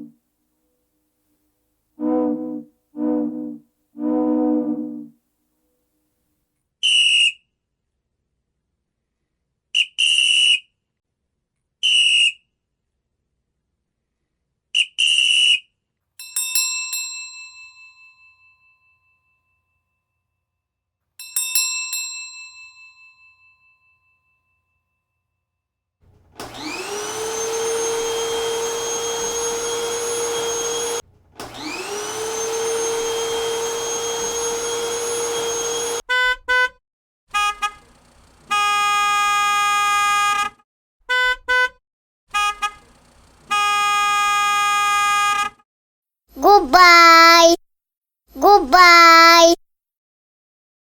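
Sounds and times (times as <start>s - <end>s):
high whistle-like toots: 2.0s - 5.1s
motorised appliance whining: 26.3s - 36.0s.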